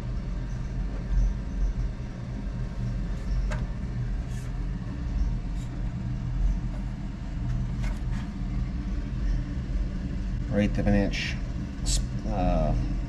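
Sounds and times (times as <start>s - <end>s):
machinery humming: 0.0s - 13.0s.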